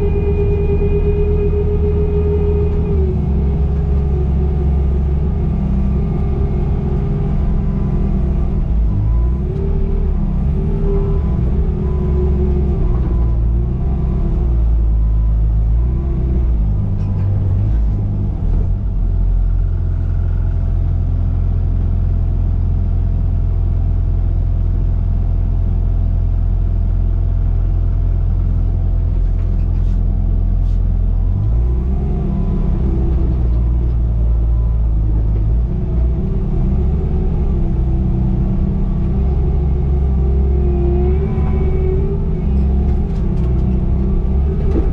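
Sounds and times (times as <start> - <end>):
diesel engine under load: 0.0 - 44.9.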